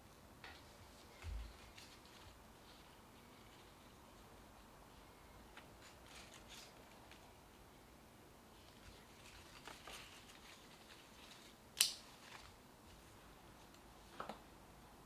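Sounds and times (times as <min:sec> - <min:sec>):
soft handling rustles and taps: 0:00.4 - 0:04.7.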